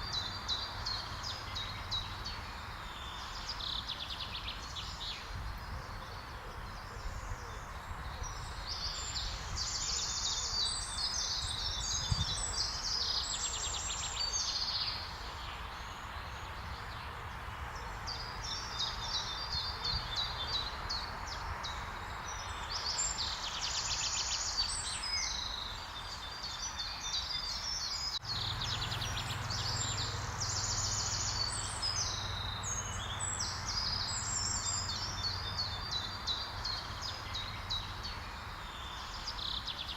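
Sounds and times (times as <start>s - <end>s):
bird singing high trills: 27.9s - 36.0s.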